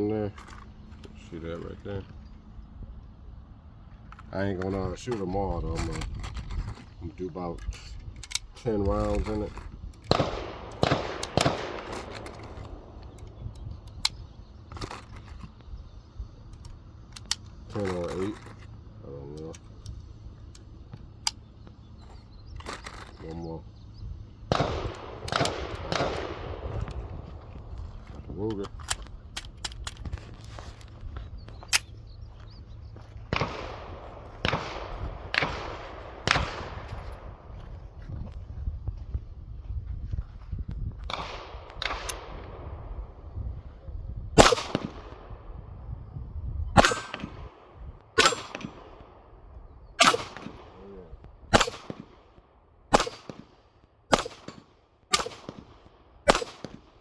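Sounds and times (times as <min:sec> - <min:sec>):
pistol shots echoing: 0:10.1 - 0:13.2, 0:24.5 - 0:27.3, 0:33.3 - 0:37.5, 0:44.4 - 0:45.4, 0:46.8 - 0:49.3, 0:50.0 - 0:50.9, 0:51.5 - 0:52.3, 0:52.9 - 0:57.0.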